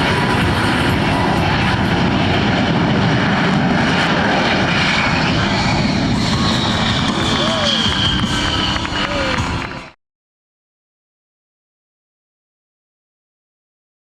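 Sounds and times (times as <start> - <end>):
jet engine roaring: 0.0 - 10.0.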